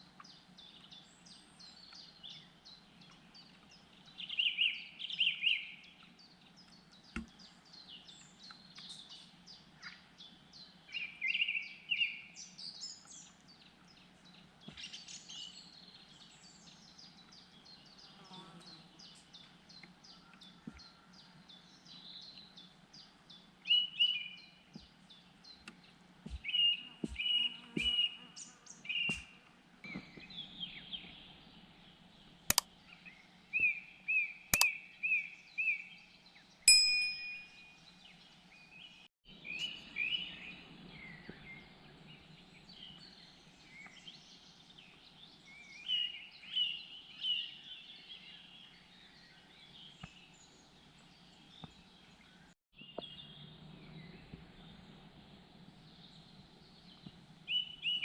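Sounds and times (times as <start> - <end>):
birds chirping: 0.0 - 58.0
brief metallic ring: 36.7 - 37.7.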